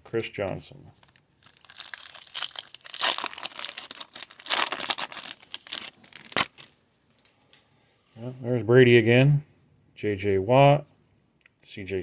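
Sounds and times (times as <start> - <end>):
wrapper crinkling and tearing: 1.0 - 6.8.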